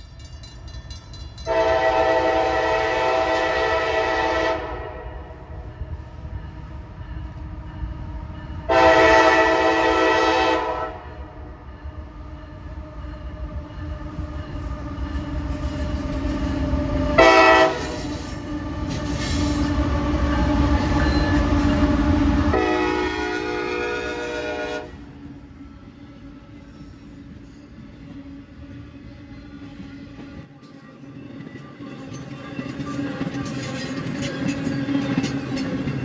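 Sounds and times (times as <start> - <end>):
low rumble of passing train: 0.0 - 36.0
locomotive air horn: 1.5 - 5.5, 8.7 - 11.2, 17.2 - 18.1, 22.5 - 25.1.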